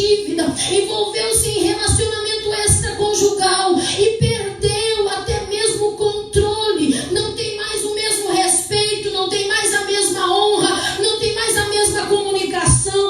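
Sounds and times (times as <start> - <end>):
woman singing in high voice: 0.0 - 13.0
low thumping beat: 1.4 - 3.1.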